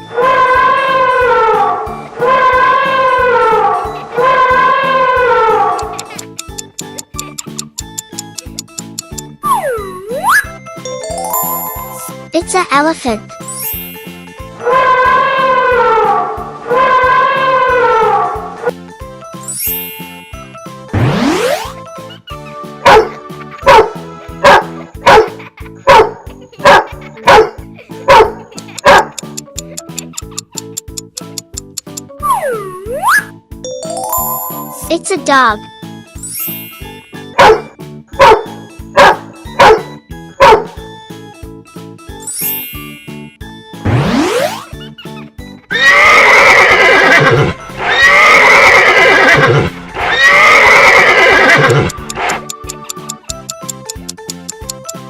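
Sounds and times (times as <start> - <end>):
dog barking: 22.8 - 29.2, 37.4 - 40.7
horse neighing: 45.7 - 52.4.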